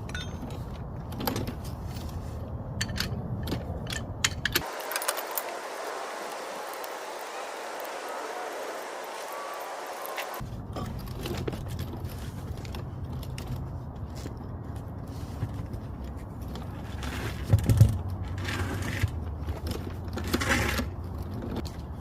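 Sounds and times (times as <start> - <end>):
metal tools clattering: 0.0 - 1.6
metal tools clinking and scraping: 0.0 - 5.6.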